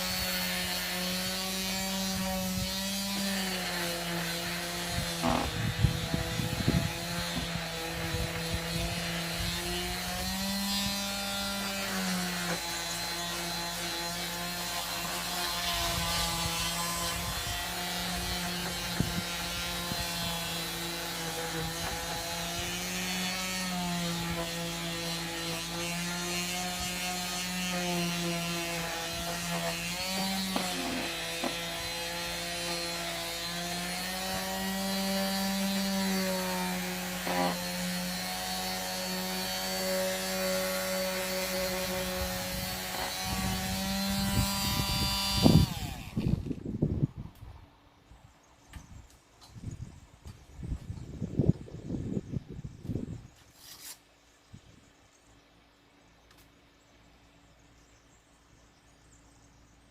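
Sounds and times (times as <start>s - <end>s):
disc sander on wood: 0.0s - 46.2s.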